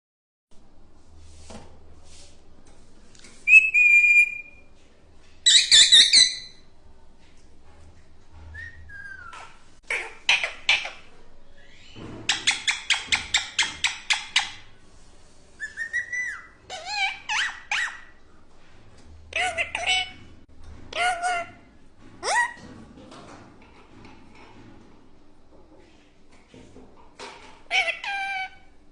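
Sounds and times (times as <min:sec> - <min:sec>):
parrot whistling: 0:03.5 - 0:04.6, 0:05.5 - 0:06.5, 0:08.6 - 0:09.4, 0:15.6 - 0:17.9
parrot harsh calls: 0:05.5 - 0:06.6, 0:19.3 - 0:20.2, 0:27.7 - 0:28.7.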